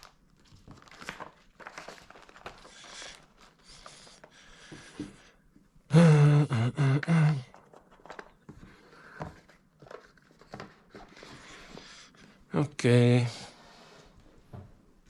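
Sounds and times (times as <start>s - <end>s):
man humming or grunting: 5.9s - 7.5s.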